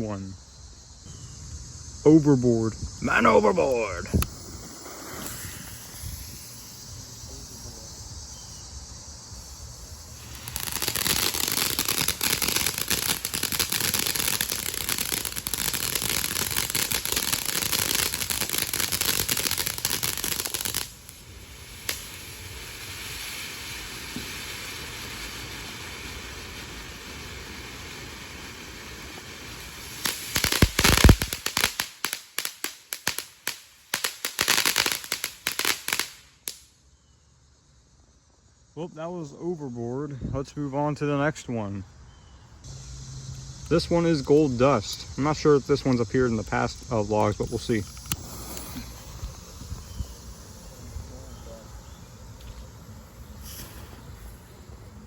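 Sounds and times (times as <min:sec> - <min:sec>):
firework hissing and crackling: 0:00.6 - 0:36.9, 0:42.6 - 0:55.0
firework sharp cracks: 0:03.2 - 0:08.2, 0:09.3 - 0:36.7, 0:47.5 - 0:55.0.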